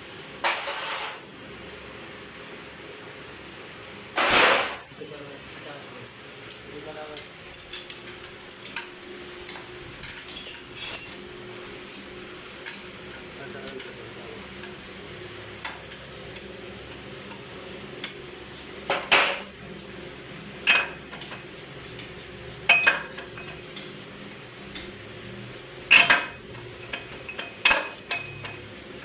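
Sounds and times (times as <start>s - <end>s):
metal tools clanking: 10.3s - 11.2s
low steady hum: 15.6s - 29.0s.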